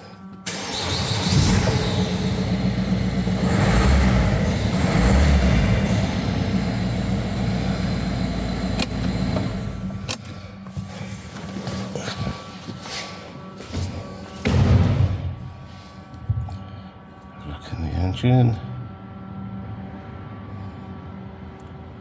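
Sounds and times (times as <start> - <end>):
diesel engine starting and running: 0.4 - 10.4.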